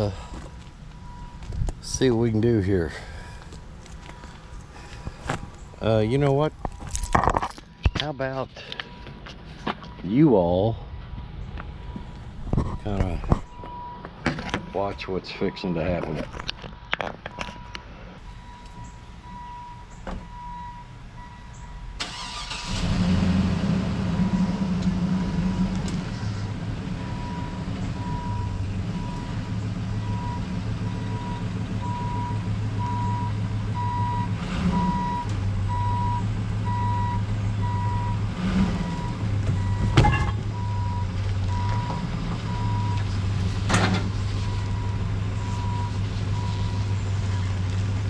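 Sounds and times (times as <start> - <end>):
backup alarm beeping: 0.2 - 1.6, 11.9 - 14.0, 18.3 - 22.7, 27.0 - 29.3, 30.0 - 38.2, 38.9 - 43.0, 44.5 - 46.8
vehicle engine starting and running: 20.4 - 48.0.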